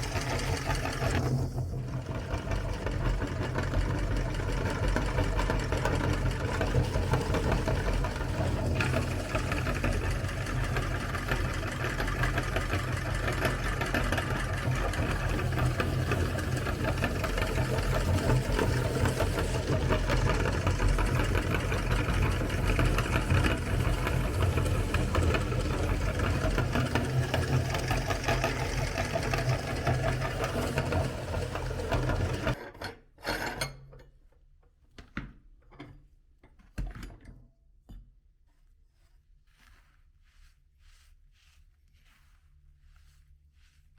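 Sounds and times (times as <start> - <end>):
electric meat grinder crunching: 0.0 - 32.6.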